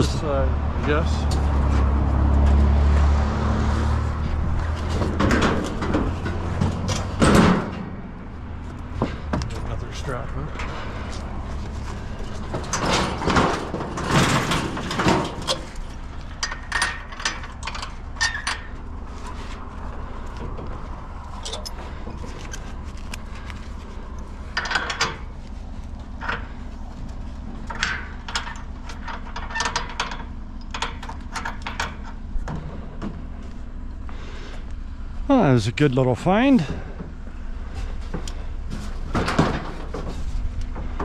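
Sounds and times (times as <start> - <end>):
steady low hum: 3.6 - 41.0
scrap metal clanking: 8.9 - 33.3.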